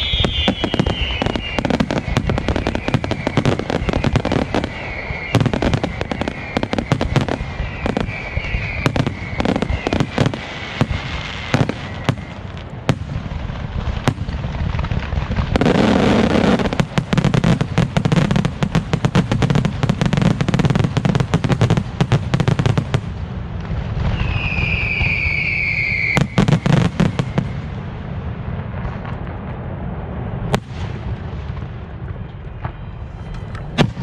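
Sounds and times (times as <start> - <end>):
whistling firework shell: 0.0 - 12.6, 24.1 - 27.7, 32.2 - 34.0
fireworks bangs: 0.0 - 34.0.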